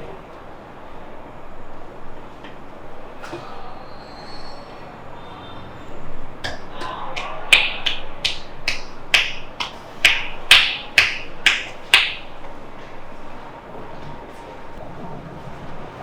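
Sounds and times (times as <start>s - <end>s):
hands clapping on body: 6.5s - 12.3s.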